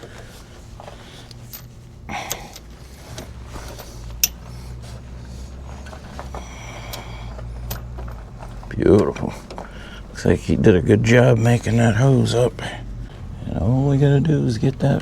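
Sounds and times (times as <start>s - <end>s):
hose parts clicking and rustling: 0.0s - 10.4s
steady low hum: 0.0s - 15.0s.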